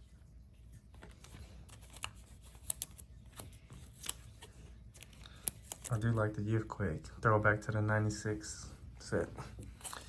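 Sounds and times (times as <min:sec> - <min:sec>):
trading cards flipping: 0:00.8 - 0:06.1, 0:09.6 - 0:10.0
cards sliding: 0:00.9 - 0:06.0.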